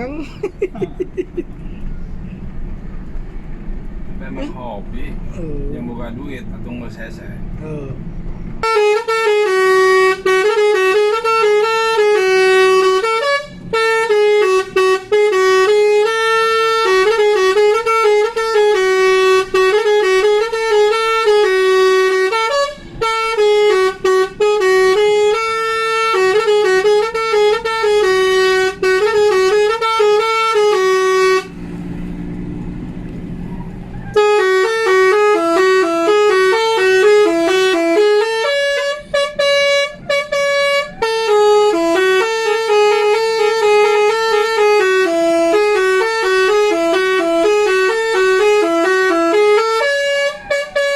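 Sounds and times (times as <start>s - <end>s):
bus musical horn tune: 8.6s - 31.6s, 33.5s - 50.9s.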